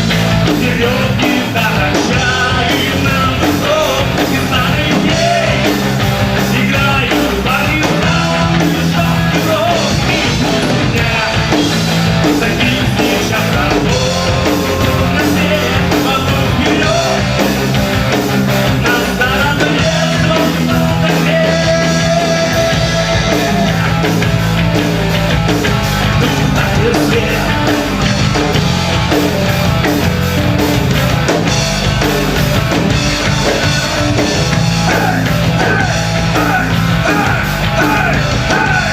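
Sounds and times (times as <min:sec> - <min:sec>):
live rock band playing: 0:00.0 - 0:38.9
person singing: 0:00.4 - 0:17.6, 0:18.7 - 0:24.1, 0:26.2 - 0:28.0, 0:33.2 - 0:38.9.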